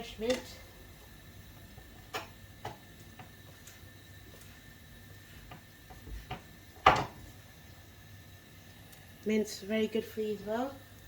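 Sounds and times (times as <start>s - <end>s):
utensils clicking and tapping: 0.1s - 0.6s.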